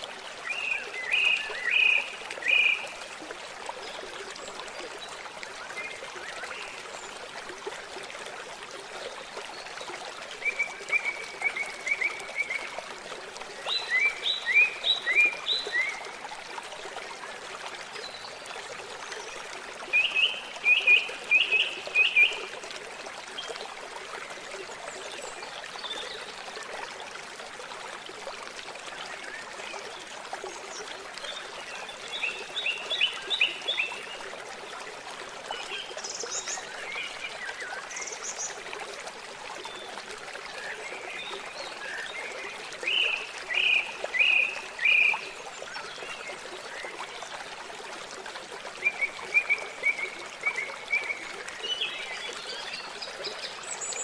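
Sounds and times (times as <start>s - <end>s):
running water rushing: 0.0s - 54.0s.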